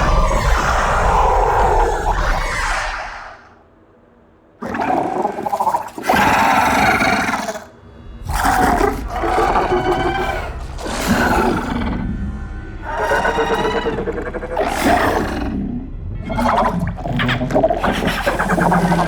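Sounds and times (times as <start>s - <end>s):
monster roars and growls: 0.0s - 3.5s, 4.6s - 19.0s.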